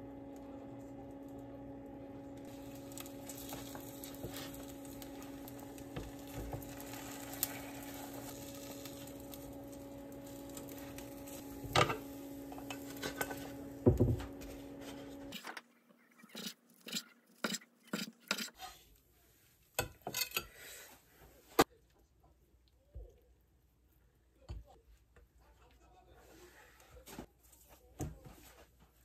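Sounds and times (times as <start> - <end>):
electrical hum: 0.0 - 17.3.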